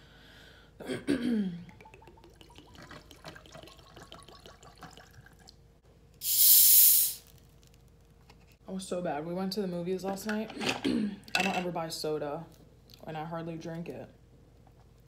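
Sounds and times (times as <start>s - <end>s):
fizzy drink hiss: 6.2s - 7.3s.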